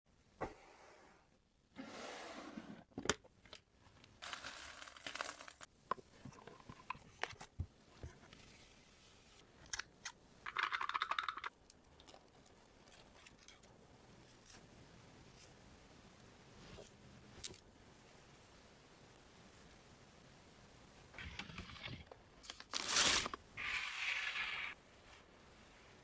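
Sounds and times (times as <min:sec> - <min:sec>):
packing material crinkling: 0:22.4 - 0:24.8.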